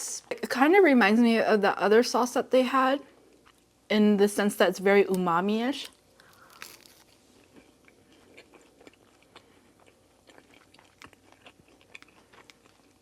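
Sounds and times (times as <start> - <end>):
faint chewing: 3.1 - 3.7, 5.1 - 13.0.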